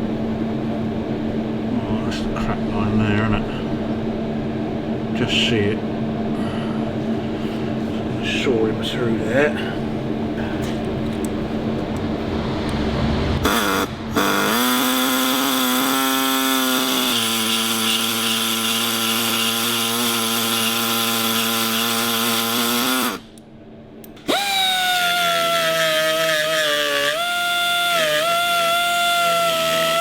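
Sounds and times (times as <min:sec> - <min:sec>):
power saw cutting metal: 0:13.4 - 0:23.2, 0:24.3 - 0:30.0.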